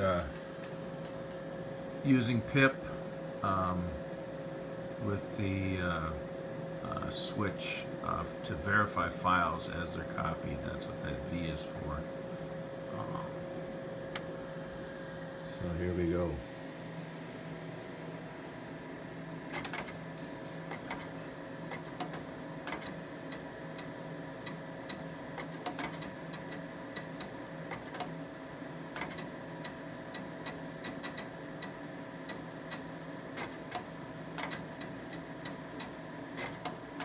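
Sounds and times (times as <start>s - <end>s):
steady hum: 0.0s - 37.0s
floppy drive heads clicking: 28.9s - 37.0s.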